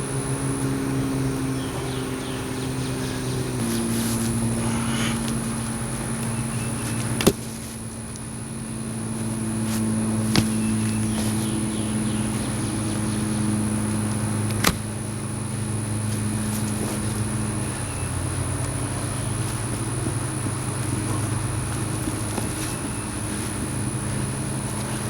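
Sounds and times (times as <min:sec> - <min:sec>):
engine running steadily: 0:00.0 - 0:25.0
sharp engine knocks: 0:04.5 - 0:07.8, 0:09.8 - 0:15.2.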